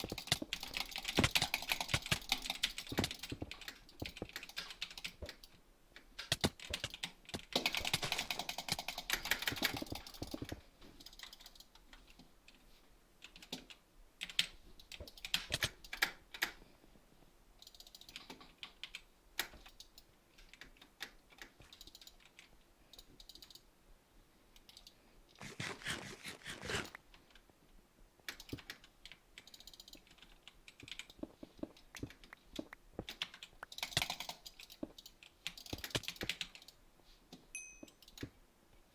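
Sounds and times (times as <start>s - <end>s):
typing on computer keyboard: 0.0s - 5.6s, 6.2s - 11.9s, 13.2s - 16.6s, 17.6s - 23.6s, 28.3s - 36.8s.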